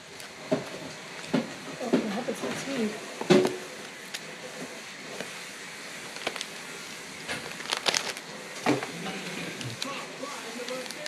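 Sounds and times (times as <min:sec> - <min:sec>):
card packs crinkling and clicking: 0:06.0 - 0:06.6, 0:07.3 - 0:08.9, 0:09.6 - 0:11.0.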